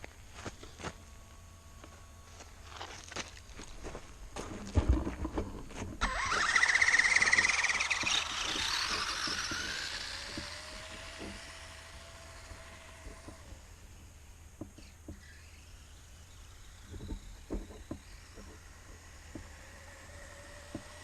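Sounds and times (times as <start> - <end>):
toy truck electric motor whining: 6.0 - 21.0.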